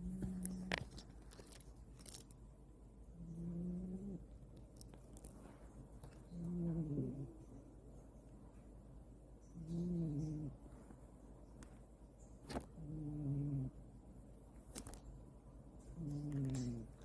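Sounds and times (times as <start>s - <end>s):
cat snoring: 3.2s - 4.2s, 6.3s - 7.4s, 9.6s - 10.6s, 12.8s - 13.8s, 16.0s - 17.0s.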